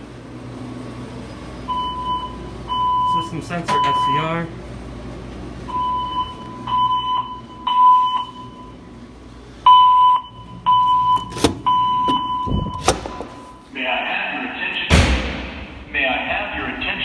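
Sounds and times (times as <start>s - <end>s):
fire alarm beeping: 1.4s - 4.6s, 5.6s - 9.0s, 9.6s - 13.8s
sharp knock: 14.9s - 15.9s.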